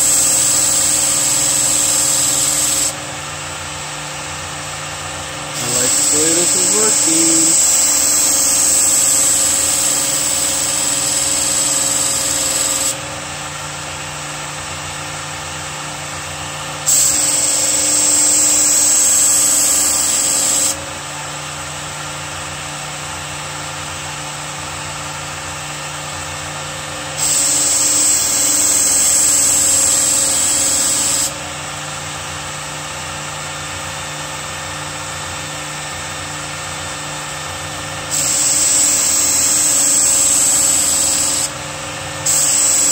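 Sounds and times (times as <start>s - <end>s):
knife grinding on abrasive belt: 0.0s - 2.9s, 5.6s - 13.0s, 16.9s - 20.8s, 38.1s - 41.5s, 42.3s - 42.9s
belt sharpener motor hum: 0.0s - 3.0s, 5.5s - 13.1s, 16.9s - 20.8s, 27.2s - 31.4s, 38.1s - 41.6s, 42.2s - 42.9s.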